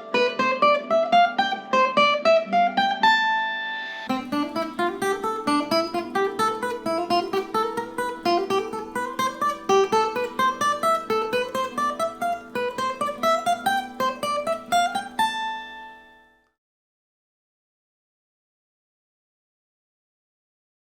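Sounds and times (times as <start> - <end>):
acoustic guitar plucked runs: 0.0 - 16.4.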